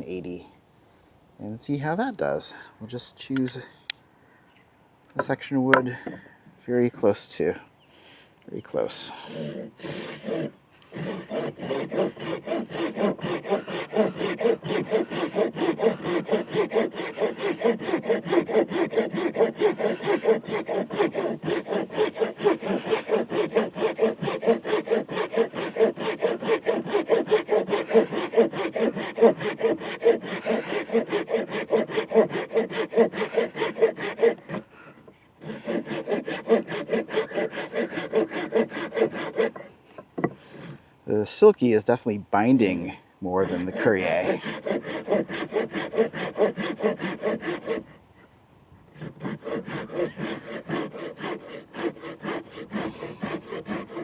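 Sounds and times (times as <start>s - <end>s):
hand saw cutting wood: 9.3s - 40.8s, 43.4s - 48.0s, 48.9s - 54.0s.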